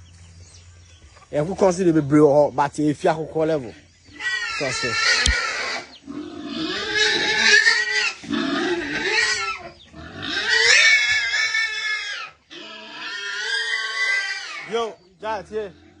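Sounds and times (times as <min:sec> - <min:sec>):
pigs squealing: 0:04.1 - 0:16.0.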